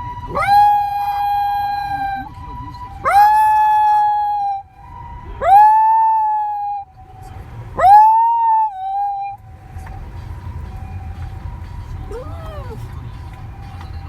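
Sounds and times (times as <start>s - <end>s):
dog howling: 0.0s - 4.6s, 5.4s - 6.8s, 7.8s - 9.4s, 12.1s - 12.9s
steady siren tone: 0.0s - 14.0s.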